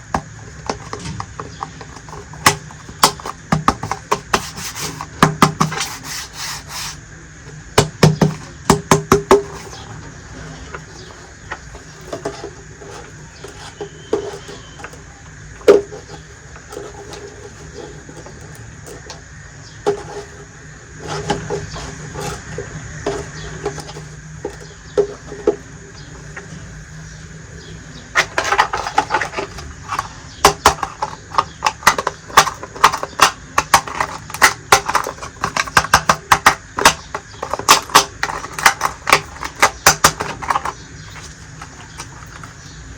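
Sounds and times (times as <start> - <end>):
plastic toy pieces clicking: 28.2 - 42.5.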